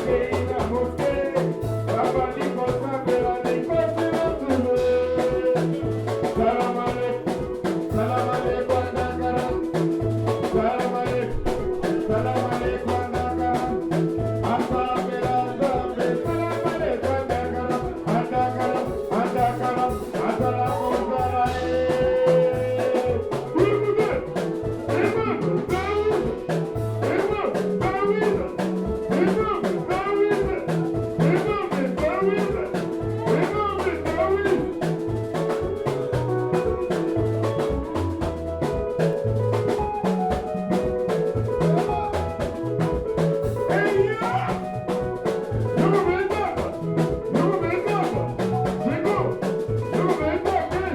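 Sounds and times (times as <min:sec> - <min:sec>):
person singing: 0:00.0 - 0:38.1, 0:43.5 - 0:50.9.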